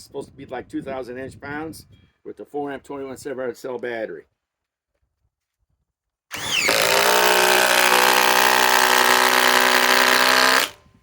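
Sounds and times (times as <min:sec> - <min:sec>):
impact driver motor running: 0:06.3 - 0:10.8.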